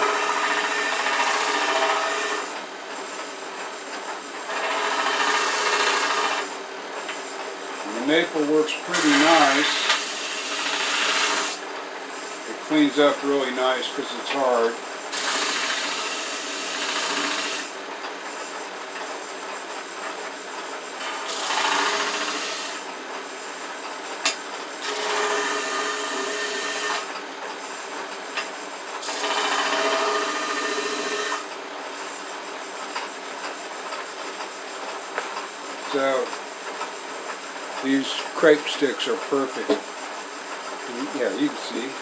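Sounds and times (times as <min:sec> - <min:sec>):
wood grinding against abrasive: 0:04.5 - 0:06.6, 0:07.9 - 0:11.6, 0:24.8 - 0:27.2, 0:29.0 - 0:31.5.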